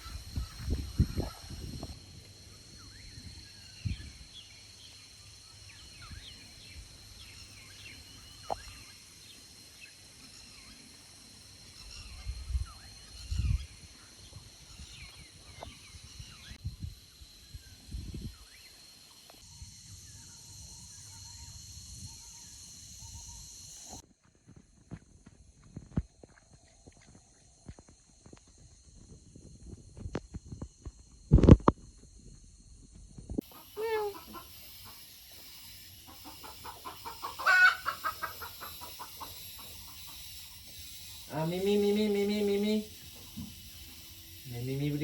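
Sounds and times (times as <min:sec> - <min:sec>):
high insect-like buzz: 0:00.0 - 0:45.0
bird-like chirps: 0:02.8 - 0:11.0, 0:33.4 - 0:45.0
hen clucking: 0:33.5 - 0:40.5.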